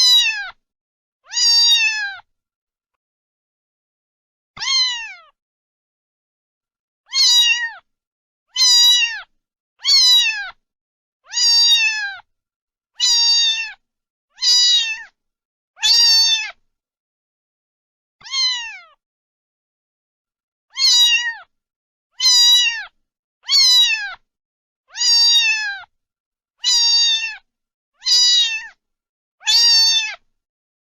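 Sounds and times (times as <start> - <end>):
cat meowing: 0.0 - 0.6, 1.2 - 2.3, 4.6 - 5.4, 7.1 - 7.9, 8.5 - 10.6, 11.3 - 12.3, 13.0 - 13.8, 14.4 - 15.2, 15.8 - 16.6, 18.2 - 19.0, 20.7 - 21.5, 22.2 - 24.2, 24.9 - 25.9, 26.6 - 28.8, 29.4 - 30.2.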